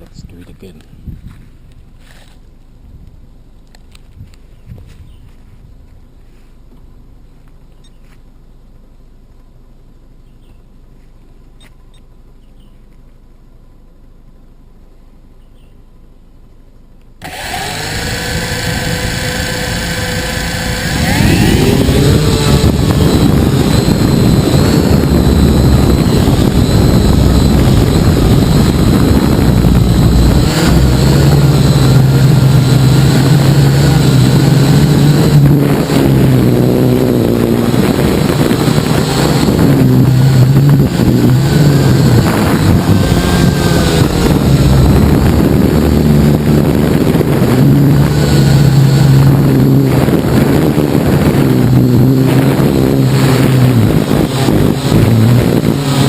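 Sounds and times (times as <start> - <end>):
quadcopter propellers whining: 17.2 - 56.0.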